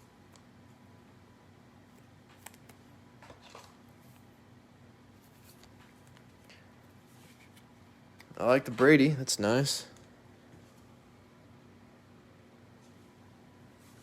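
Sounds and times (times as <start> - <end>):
trading cards rustling and clicking: 1.9 - 4.3.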